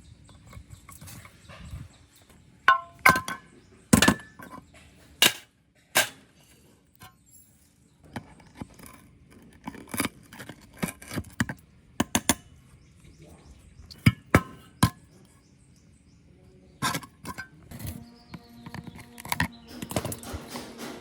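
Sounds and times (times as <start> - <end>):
hand tools knocking on metal: 2.7 - 4.6, 18.7 - 21.0.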